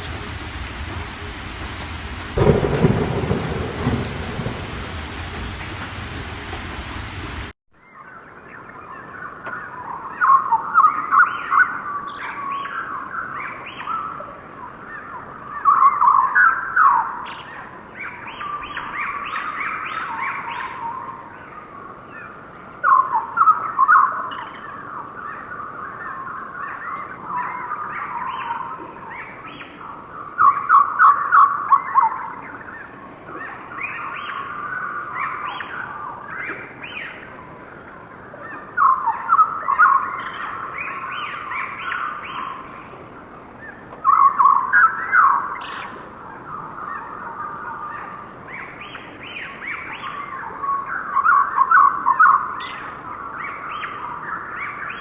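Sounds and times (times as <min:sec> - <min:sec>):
birds chirping: 0:00.0 - 0:07.5.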